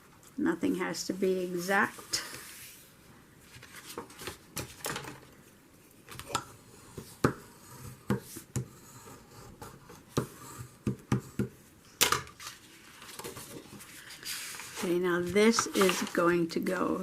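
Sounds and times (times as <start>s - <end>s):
paper being handled and folded: 3.4s - 5.1s, 12.4s - 17.0s
paper taps and crinkles: 12.0s - 16.8s.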